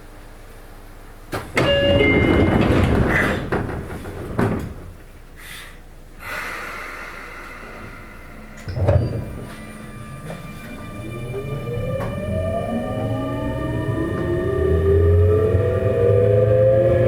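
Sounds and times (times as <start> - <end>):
doors shutting with a thud: 1.3 - 5.0, 8.6 - 10.5
short door chime: 1.6 - 2.7.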